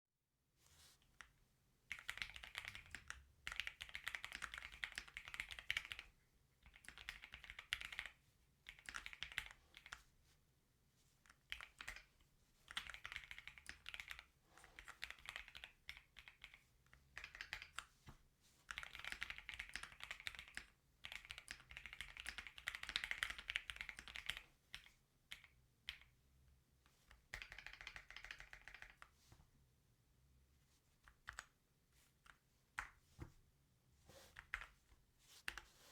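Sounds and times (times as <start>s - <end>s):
mechanical keyboard typing: 1.9s - 6.1s, 6.7s - 10.0s, 11.5s - 12.1s, 12.7s - 14.2s, 14.8s - 16.6s, 17.2s - 17.8s, 18.7s - 26.1s, 27.2s - 29.1s.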